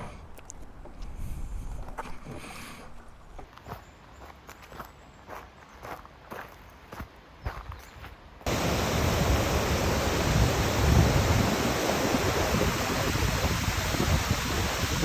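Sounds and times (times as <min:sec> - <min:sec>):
faint footsteps on a path: 0:00.0 - 0:09.1
waterfall rushing: 0:08.5 - 0:15.0.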